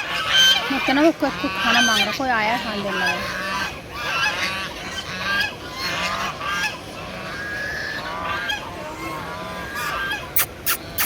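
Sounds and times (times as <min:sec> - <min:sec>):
geese honking: 0:00.0 - 0:11.0.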